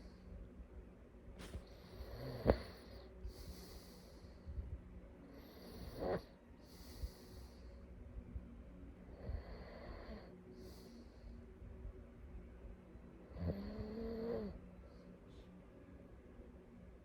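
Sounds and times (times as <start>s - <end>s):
slow noisy breathing: 1.4s - 8.4s, 9.0s - 12.1s
person snorting in sleep: 1.9s - 4.0s, 5.4s - 7.2s, 13.3s - 14.6s.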